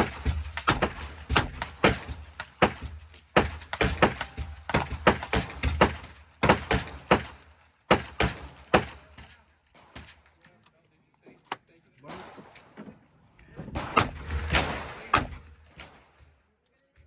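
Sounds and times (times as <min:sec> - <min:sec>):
gunshots: 0:00.0 - 0:10.2, 0:13.7 - 0:16.3.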